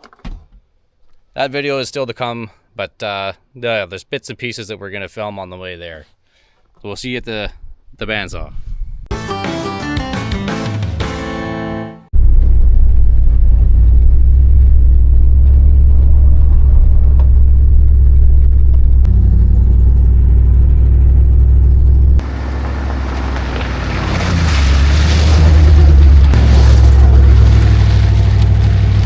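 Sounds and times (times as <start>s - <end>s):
vehicle engine low drone: 12.2s - 29.0s.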